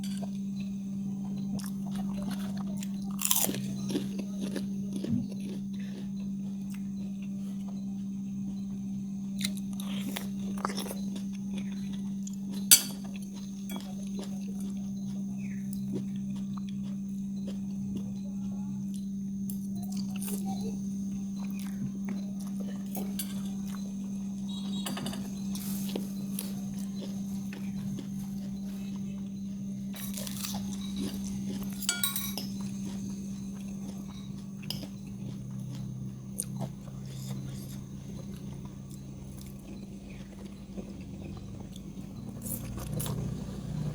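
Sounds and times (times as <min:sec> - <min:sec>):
person chewing food: 0:00.0 - 0:18.2, 0:18.9 - 0:43.9
steady low hum: 0:00.0 - 0:43.9
eating crunches: 0:01.3 - 0:07.8, 0:09.4 - 0:18.2, 0:25.4 - 0:43.9
utensil clinking against dish: 0:12.6 - 0:14.0, 0:24.5 - 0:26.0, 0:30.0 - 0:33.0.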